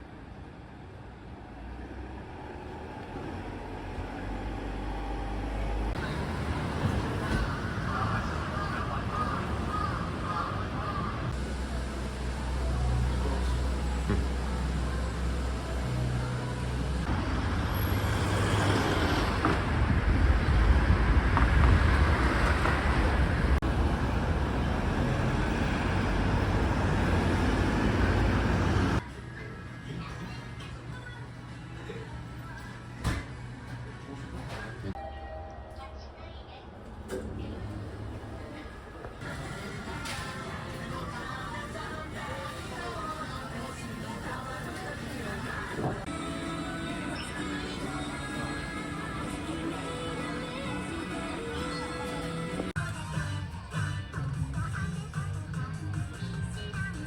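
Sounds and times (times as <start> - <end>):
vehicle rumble: 0.0 - 35.0.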